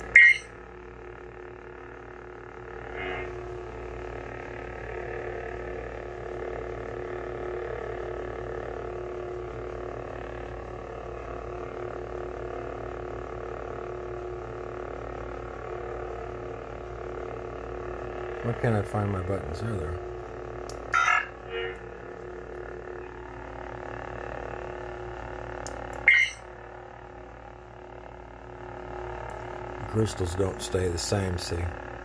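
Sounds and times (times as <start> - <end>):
lightsaber electronic hum: 0.0 - 32.0.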